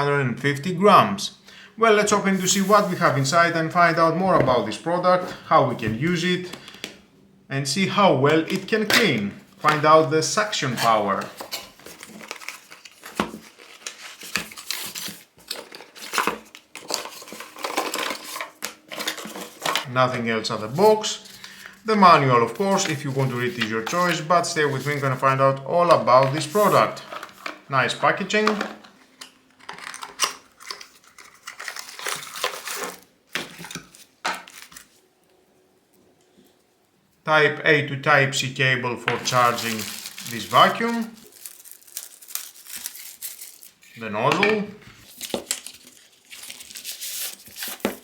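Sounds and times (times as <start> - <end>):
packaging crinkling and rustling: 2.3 - 4.6, 8.4 - 20.0, 26.2 - 35.1, 39.1 - 48.0.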